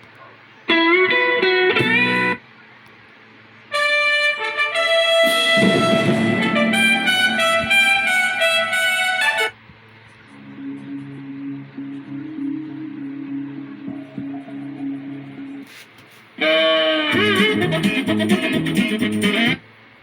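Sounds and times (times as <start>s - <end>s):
brassy trumpet-like musical sting: 3.8s - 9.6s
short sound effect clip: 5.2s - 9.2s.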